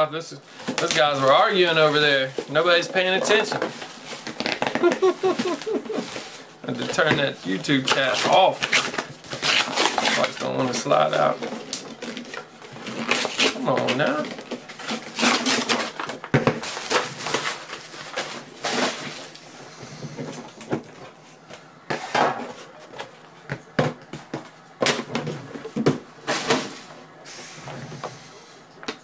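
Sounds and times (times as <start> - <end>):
cardboard box scraping and rustling: 5.5 - 19.3.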